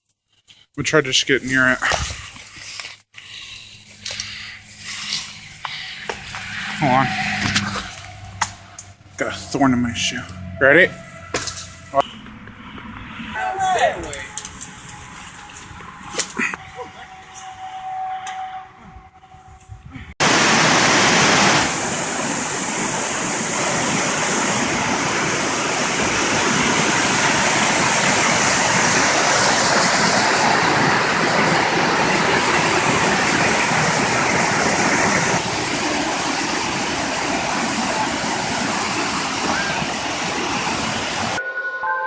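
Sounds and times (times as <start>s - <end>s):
waterfall rushing: 20.2s - 41.4s.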